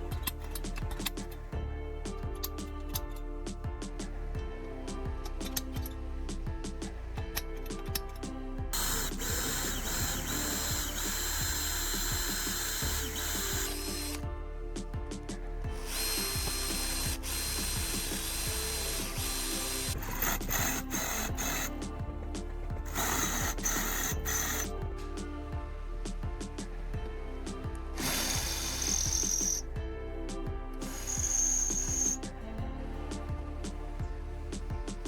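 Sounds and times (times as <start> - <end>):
background music: 0.0 - 35.0
power tool whining: 7.3 - 14.2, 15.8 - 21.8, 22.8 - 24.8, 28.0 - 29.8, 30.8 - 32.3.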